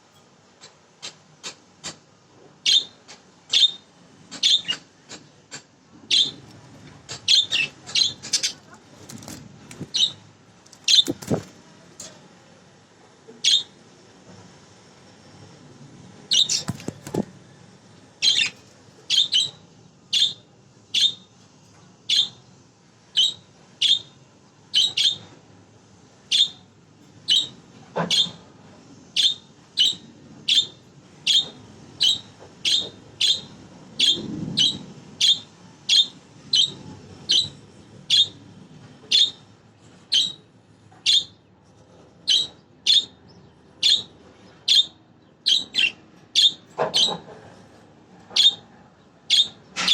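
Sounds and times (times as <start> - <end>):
budgerigar chirping: 6.1 - 6.4, 7.2 - 8.7, 9.8 - 10.2, 16.3 - 17.2, 18.2 - 19.6, 24.8 - 25.2, 42.3 - 43.2, 43.8 - 44.1, 44.7 - 47.2, 49.3 - 49.9.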